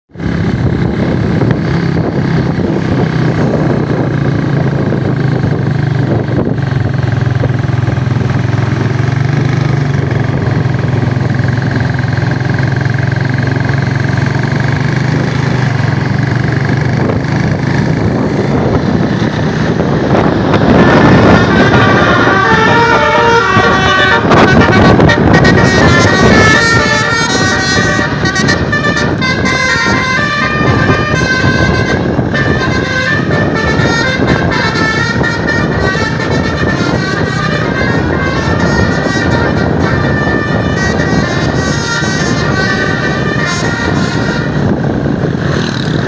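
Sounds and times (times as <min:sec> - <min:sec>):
bus engine drone: 0:00.1 - 0:46.0.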